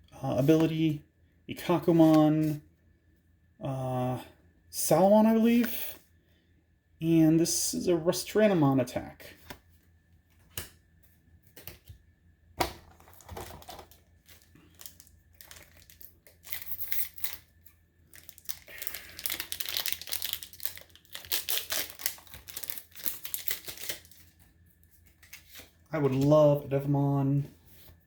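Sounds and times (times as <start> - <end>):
foil wrapper crinkling and tearing: 13.0 - 24.4.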